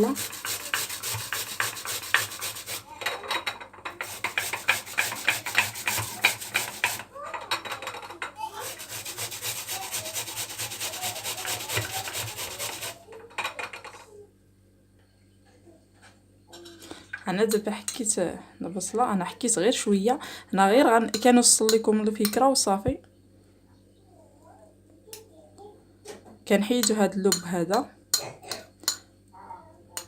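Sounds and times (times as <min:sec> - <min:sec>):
onion grated on grater: 0:00.0 - 0:02.9, 0:04.0 - 0:07.1, 0:08.4 - 0:13.0.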